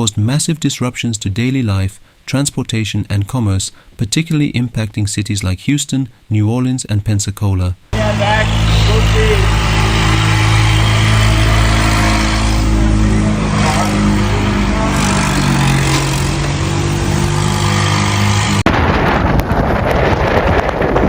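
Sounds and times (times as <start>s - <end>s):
vehicle engine running: 8.0s - 18.7s
wind rumbling on microphone: 18.6s - 21.0s.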